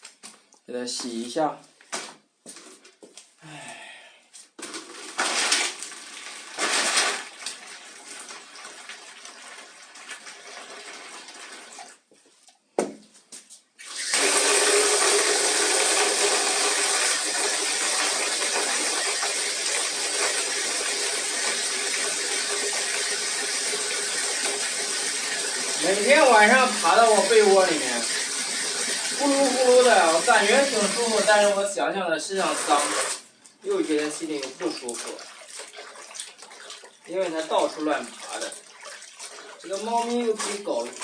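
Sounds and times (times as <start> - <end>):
water running into a basin: 4.6 - 12.2, 13.8 - 41.0
water splashing: 4.9 - 12.0, 25.5 - 31.7, 32.3 - 41.0.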